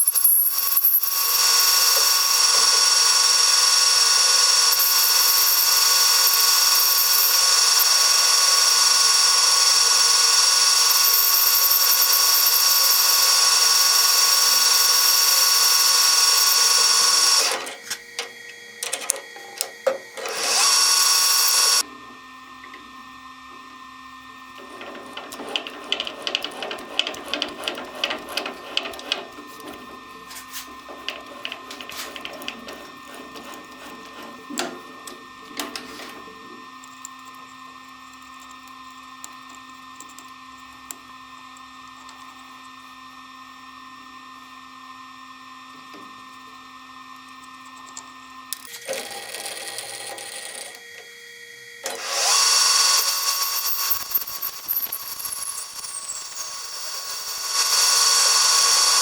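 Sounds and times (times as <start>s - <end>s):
machine tool motor whining: 0.0s - 21.9s, 24.4s - 37.4s, 48.5s - 59.0s.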